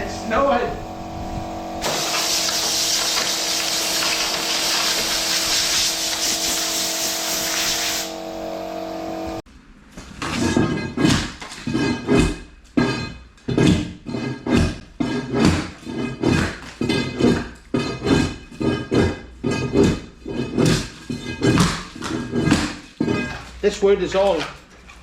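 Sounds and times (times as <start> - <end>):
power tool motor hum: 0.0 - 9.4
loud hiss of paint stripping: 1.8 - 8.2.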